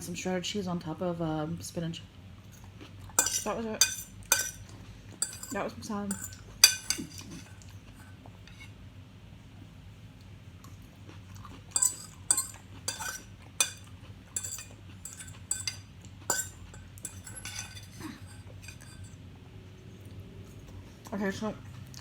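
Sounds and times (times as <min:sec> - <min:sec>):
cutlery clinking against dish: 0:03.2 - 0:08.7, 0:11.7 - 0:19.2.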